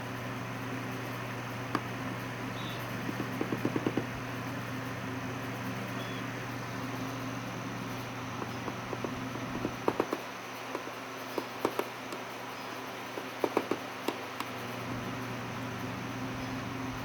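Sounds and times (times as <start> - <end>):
woodpecker knocking on house: 2.6 - 4.2, 8.3 - 12.3, 13.1 - 14.6.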